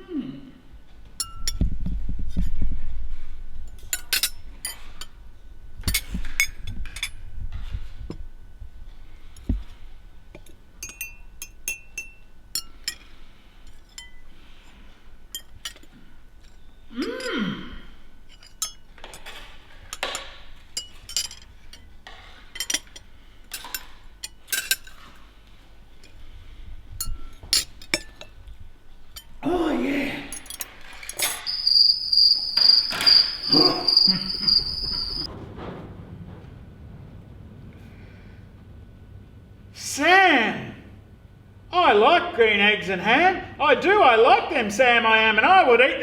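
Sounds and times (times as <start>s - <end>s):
cutlery clinking against dishes: 1.2s - 1.7s, 10.4s - 14.6s, 15.3s - 17.3s, 18.3s - 25.3s, 27.0s - 28.4s.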